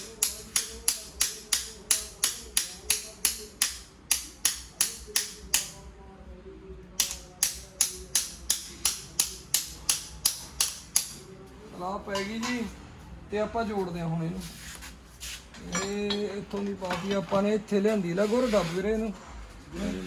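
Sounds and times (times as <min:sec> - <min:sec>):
hammer tapping metal fitting: 0:00.0 - 0:05.8, 0:07.0 - 0:11.2.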